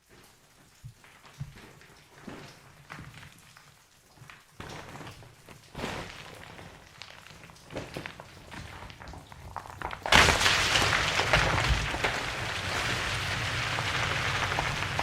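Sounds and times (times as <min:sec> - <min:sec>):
stones clattering down: 0:04.6 - 0:15.0
heavy crash of falling rock: 0:05.7 - 0:15.0.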